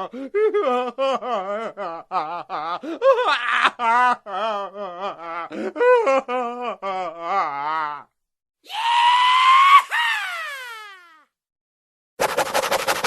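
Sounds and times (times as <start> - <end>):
cartoon high-pitched scream: 8.6 - 11.3.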